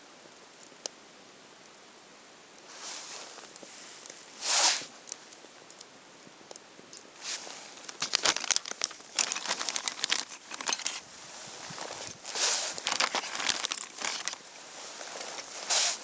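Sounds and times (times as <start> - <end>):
packaging crinkling and crackling: 7.1 - 16.0
rustling burst: 7.2 - 16.0.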